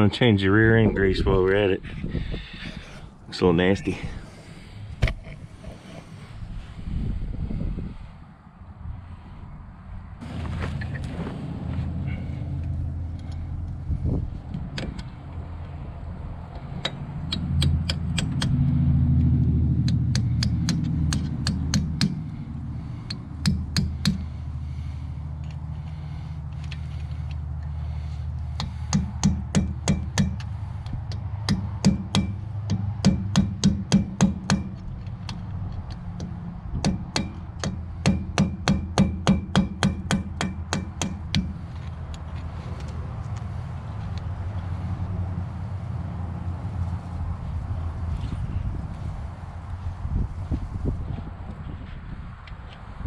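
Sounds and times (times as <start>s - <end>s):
low hum: 0.7s - 52.8s
hammer tapping on metal: 16.8s - 18.6s, 19.8s - 22.3s, 23.1s - 24.2s, 28.6s - 30.5s, 31.1s - 34.8s, 36.2s - 41.6s.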